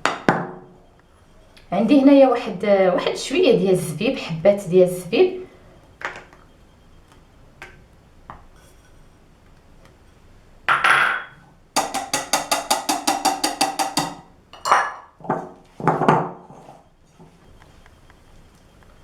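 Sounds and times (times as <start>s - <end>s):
dishes knocking and scraping: 0.0s - 0.6s, 10.7s - 17.4s
utensil clattering in mixing bowl: 11.8s - 16.4s.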